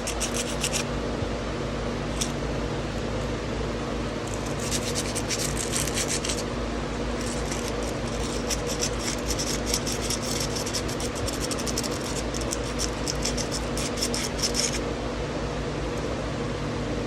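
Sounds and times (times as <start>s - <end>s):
sandpaper scratching on metal: 0.0s - 0.8s, 4.4s - 6.4s, 7.2s - 14.8s.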